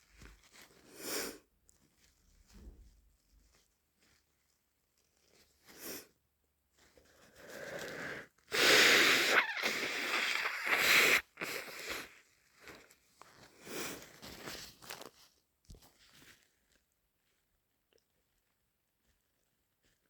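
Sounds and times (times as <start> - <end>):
person sniffing: 0.9 - 1.4, 7.3 - 12.2
person sneezing: 8.0 - 12.1.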